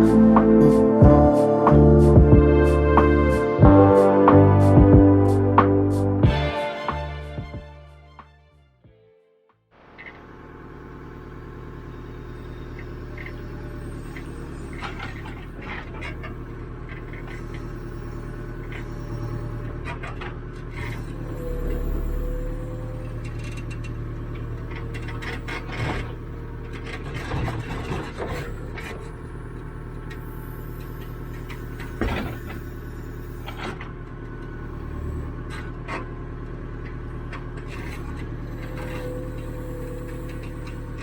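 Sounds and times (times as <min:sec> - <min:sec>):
high-pitched whine: 0:00.0 - 0:07.7, 0:20.9 - 0:26.7, 0:38.4 - 0:41.0
diesel engine running: 0:00.0 - 0:08.4, 0:09.8 - 0:41.0.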